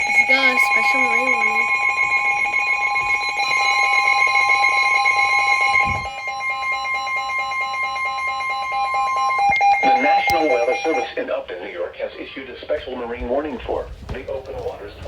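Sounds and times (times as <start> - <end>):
alarm of sustained tones: 0.0 - 11.3.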